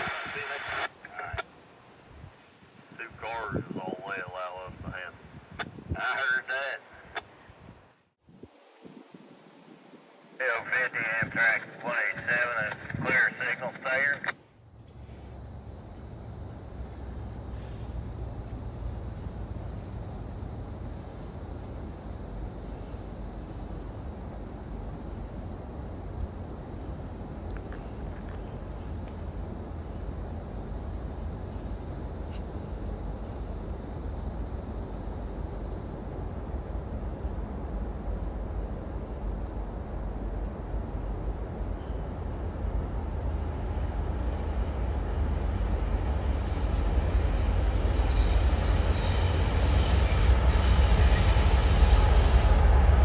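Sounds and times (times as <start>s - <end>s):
high-pitched insect chorus: 0.0s - 7.2s, 10.4s - 53.0s
train rumbling: 14.7s - 53.0s.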